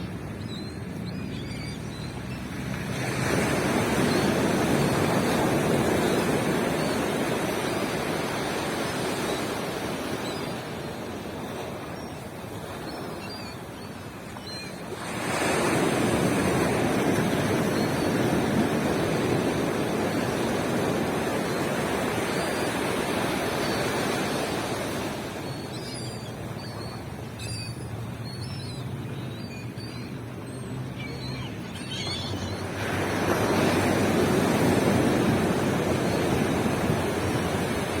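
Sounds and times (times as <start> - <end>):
ocean surf washing on beach: 2.5 - 25.8, 32.6 - 38.0.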